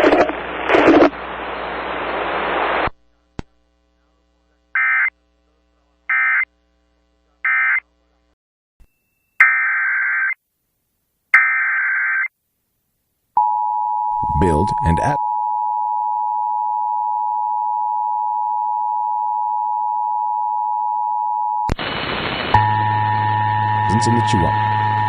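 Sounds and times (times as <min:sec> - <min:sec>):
radio hiss: 0:00.0 - 0:03.0, 0:21.7 - 0:22.7, 0:23.9 - 0:24.6.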